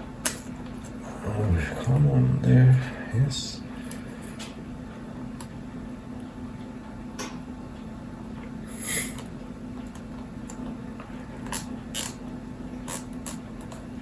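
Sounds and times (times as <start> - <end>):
steady low hum: 0.0 - 14.0
cable tie zip: 12.9 - 13.4.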